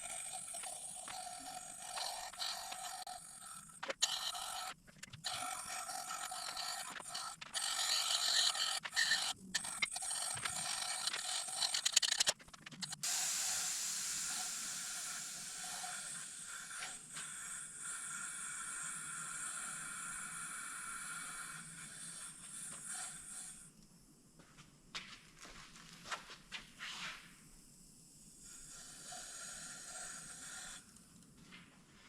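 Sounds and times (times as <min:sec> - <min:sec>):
sandblasting hiss: 0:13.0 - 0:23.4.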